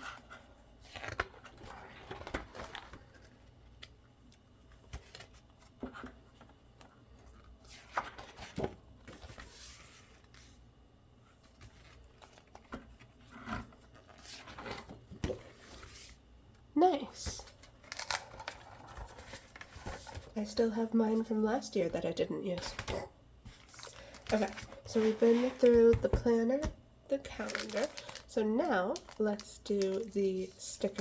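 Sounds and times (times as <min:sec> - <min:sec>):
paper pages rustling: 0:27.3 - 0:28.3, 0:28.9 - 0:31.0.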